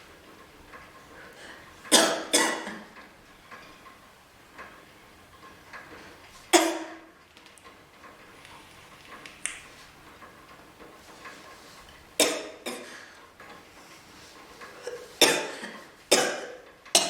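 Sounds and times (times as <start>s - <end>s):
woman coughing: 1.9s - 2.8s, 6.6s - 7.0s, 12.2s - 13.0s, 15.2s - 17.0s.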